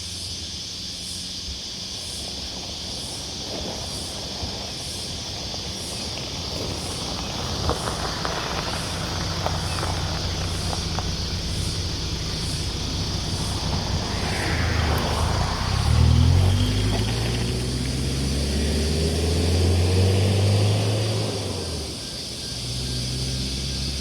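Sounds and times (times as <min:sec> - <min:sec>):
vehicle rumble passing: 0:01.2 - 0:24.0
engine note climbing: 0:07.4 - 0:24.0
faint high pulse: 0:11.7 - 0:17.5.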